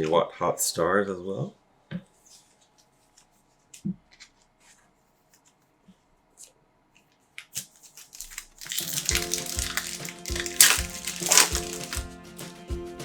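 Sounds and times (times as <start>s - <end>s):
foil wrapper crinkling and tearing: 7.5s - 12.1s
trading cards rustling: 7.6s - 12.1s
music: 8.6s - 13.0s.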